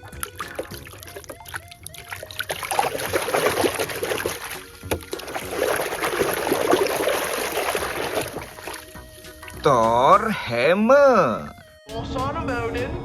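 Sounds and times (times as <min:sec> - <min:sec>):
water sloshing and splashing: 0:00.0 - 0:10.2.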